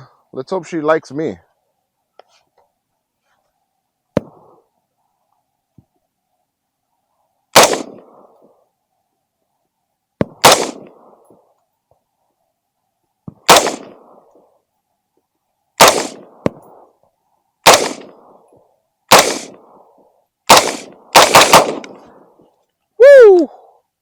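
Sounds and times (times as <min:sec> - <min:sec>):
rifle shots with rumbling echo: 0:04.2 - 0:04.6, 0:07.5 - 0:08.4, 0:10.2 - 0:11.3, 0:13.4 - 0:14.3, 0:15.8 - 0:16.8, 0:17.6 - 0:18.4, 0:19.1 - 0:19.9, 0:20.5 - 0:22.2.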